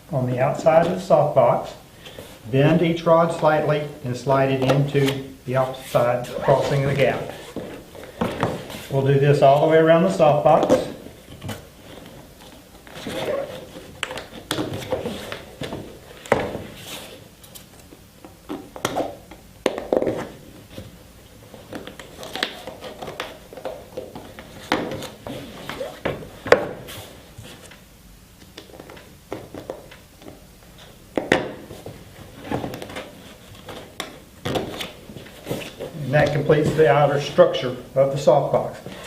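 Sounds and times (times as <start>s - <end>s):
heavy fabric rustling: 4.9s - 17.3s.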